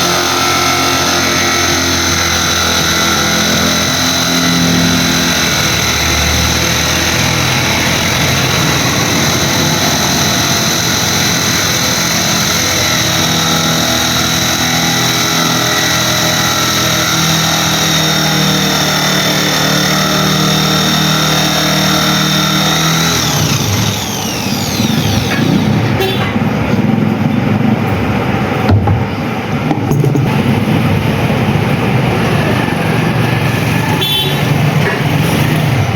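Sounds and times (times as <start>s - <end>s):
washing machine motor whining: 0.0s - 28.7s
washing machine knocks and clatter: 28.7s - 30.3s.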